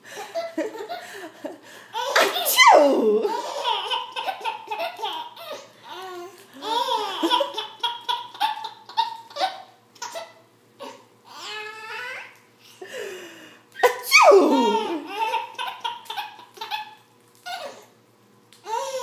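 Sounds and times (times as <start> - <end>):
baby laughing: 3.2 - 6.0, 6.6 - 11.0, 13.8 - 17.9.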